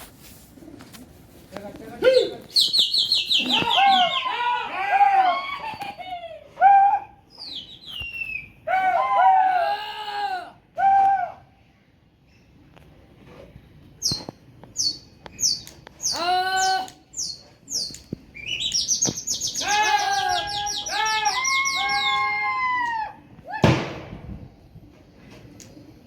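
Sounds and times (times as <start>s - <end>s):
birds chirping and calling: 2.4s - 4.6s, 7.3s - 8.6s, 14.0s - 22.4s.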